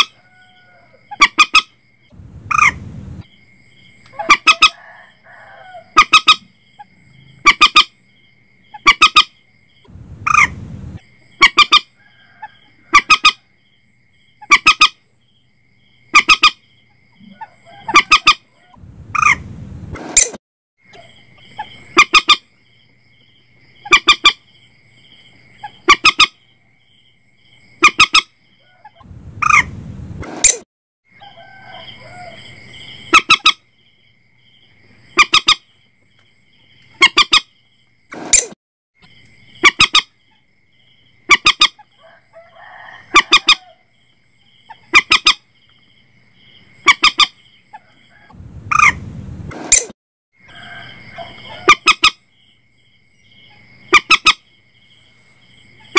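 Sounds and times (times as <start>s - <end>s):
moorhen calling: 2.5s - 2.8s, 4.0s - 4.8s, 5.7s - 7.9s, 8.7s - 9.3s, 10.2s - 10.6s, 11.4s - 11.9s, 12.9s - 13.4s, 14.4s - 15.0s, 16.1s - 16.6s, 17.2s - 19.5s, 20.9s - 22.5s, 23.8s - 24.4s, 25.6s - 26.4s, 27.8s - 29.7s, 35.1s - 35.6s, 36.9s - 37.5s, 39.6s - 40.1s, 41.3s - 41.9s, 44.7s - 45.4s.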